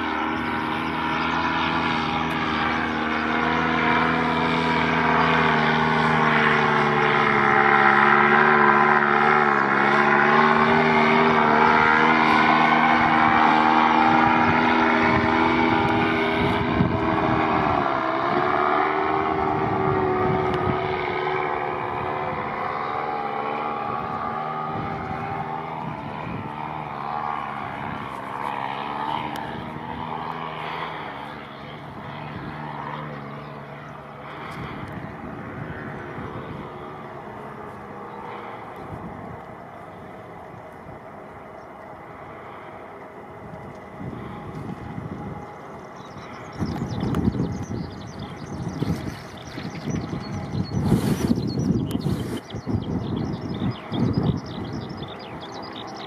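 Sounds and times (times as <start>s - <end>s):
propeller aircraft engine droning: 0.0s - 56.0s.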